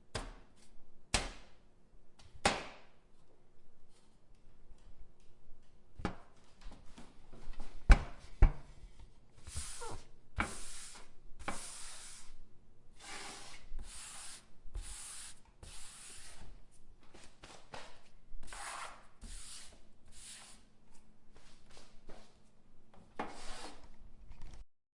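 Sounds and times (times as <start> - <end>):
cookie sheet being wiped: 9.4 - 12.4, 13.0 - 16.5, 18.4 - 20.7, 23.2 - 23.8.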